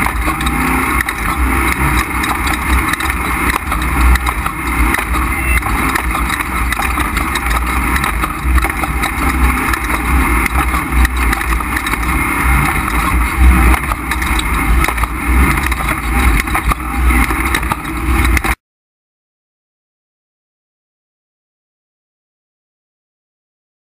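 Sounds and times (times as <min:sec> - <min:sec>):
race truck engine rumbling: 0:00.0 - 0:18.6.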